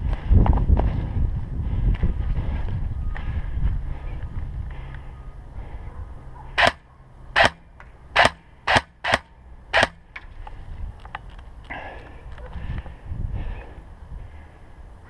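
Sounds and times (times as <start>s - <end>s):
airsoft gun shots: 6.6s - 6.8s, 7.4s - 10.0s.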